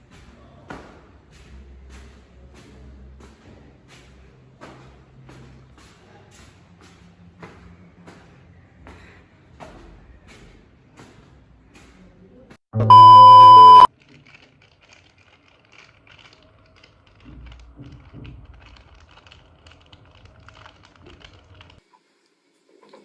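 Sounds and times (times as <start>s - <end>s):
loud electronic tone: 12.8s - 13.9s.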